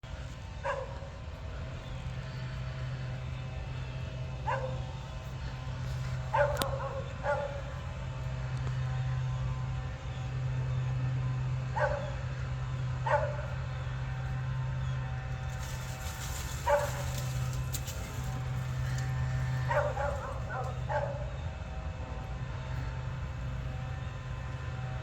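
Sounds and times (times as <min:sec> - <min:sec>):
steady low hum: 0:00.0 - 0:25.0
dog barking: 0:00.6 - 0:01.1, 0:04.4 - 0:04.8, 0:06.3 - 0:07.8, 0:11.7 - 0:12.2, 0:13.0 - 0:13.5, 0:15.6 - 0:18.4, 0:19.5 - 0:21.4.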